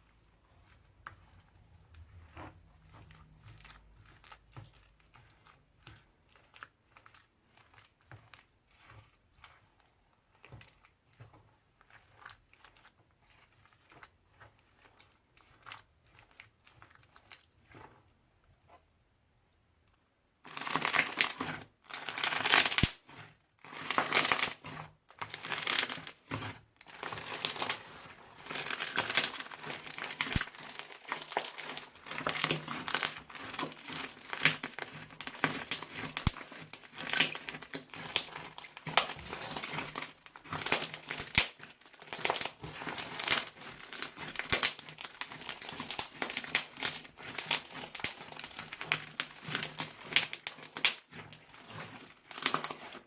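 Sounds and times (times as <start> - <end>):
crunchy slime crackling: 20.4 - 23.0, 25.2 - 53.0.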